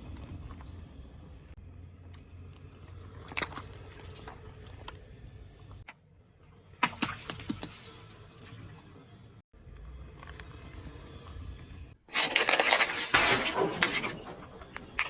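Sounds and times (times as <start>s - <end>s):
low engine hum: 0.0s - 6.8s, 7.6s - 12.1s.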